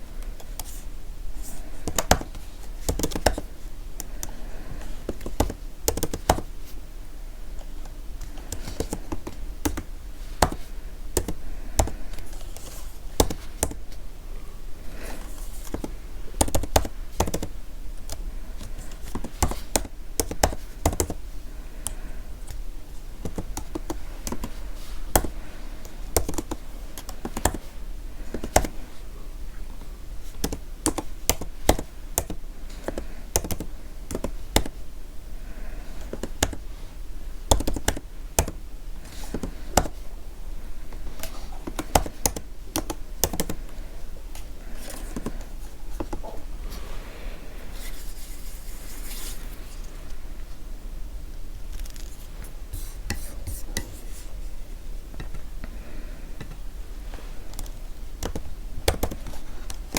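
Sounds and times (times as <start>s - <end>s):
computer keyboard typing: 1.8s - 6.5s, 7.8s - 13.9s, 15.6s - 21.2s, 23.2s - 28.8s, 30.2s - 34.8s, 36.0s - 36.6s, 37.5s - 40.0s, 41.0s - 43.8s, 57.5s - 59.9s.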